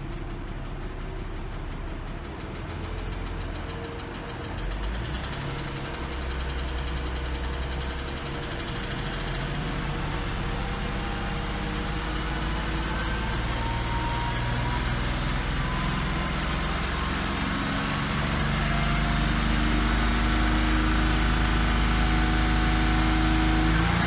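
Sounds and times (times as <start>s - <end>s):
engine knocking noise: 0.0s - 24.0s
car engine revving: 4.8s - 24.0s.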